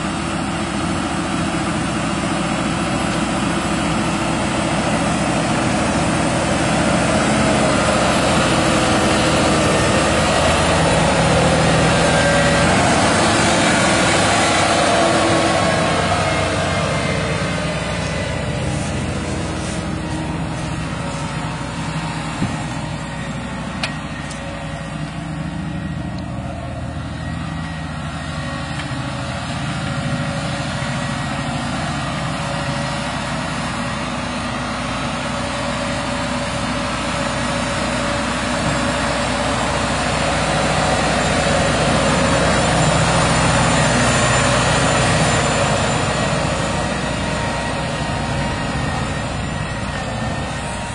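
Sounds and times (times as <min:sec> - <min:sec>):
tractor diesel engine running: 0:00.0 - 0:50.9.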